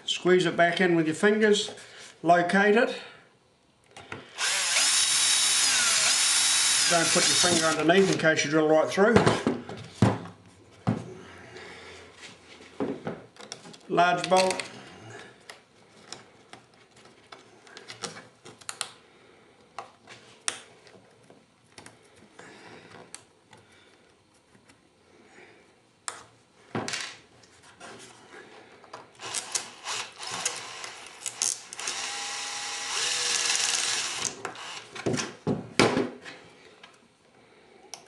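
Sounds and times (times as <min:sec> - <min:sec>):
small electric drill running: 0:04.4 - 0:07.9, 0:29.2 - 0:35.0.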